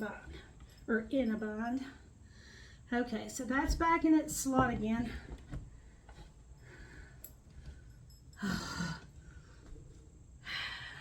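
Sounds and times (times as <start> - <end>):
woman breathing: 1.8 - 2.9, 5.2 - 9.8, 10.4 - 11.0.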